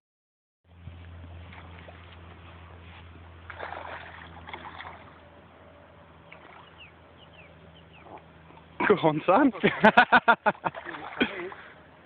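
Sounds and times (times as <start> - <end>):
low hum: 0.7 - 12.0
water splashing: 3.4 - 5.3, 6.3 - 7.0, 9.4 - 11.8.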